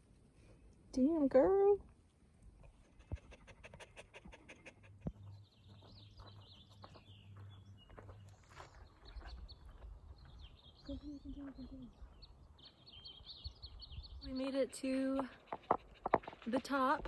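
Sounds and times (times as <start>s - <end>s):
dog panting: 2.7s - 5.4s, 15.3s - 16.6s
small birds chirping: 2.8s - 17.0s.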